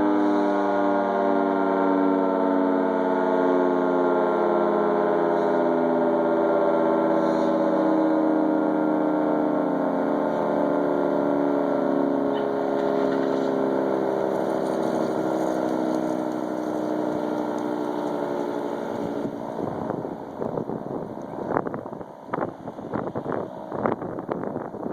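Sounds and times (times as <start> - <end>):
tornado siren tone: 0.0 - 24.9
wind gusts on microphone: 14.3 - 24.9.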